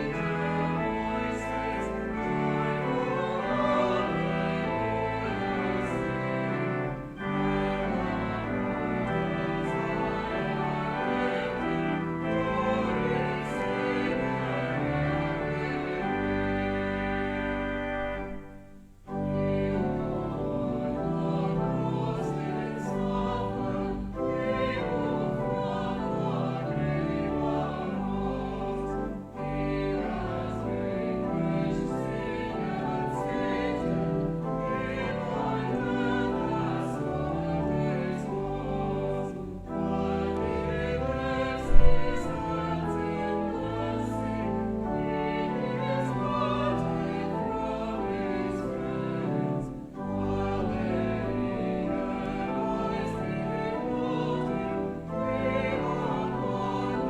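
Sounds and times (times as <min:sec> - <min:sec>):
choir singing a hymn: 0:00.0 - 0:57.0
instrumental accompaniment: 0:00.0 - 0:57.0
sharp thump: 0:41.7 - 0:42.3.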